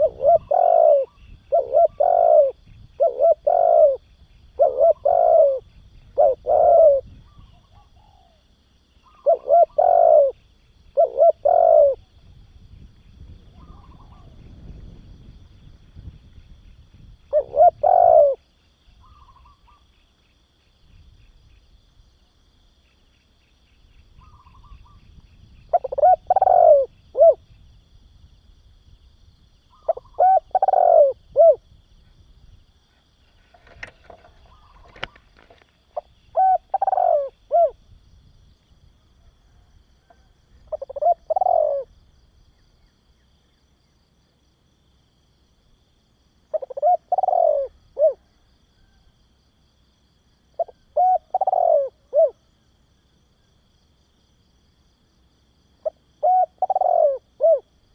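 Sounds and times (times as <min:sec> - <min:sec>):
dove cooing: 0:00.0 - 0:12.1, 0:13.4 - 0:14.5, 0:17.3 - 0:19.8, 0:24.2 - 0:25.0, 0:25.6 - 0:27.6, 0:29.7 - 0:31.7, 0:33.4 - 0:37.8, 0:39.2 - 0:42.0, 0:46.5 - 0:49.1, 0:50.5 - 0:52.5, 0:55.8 - 0:57.7.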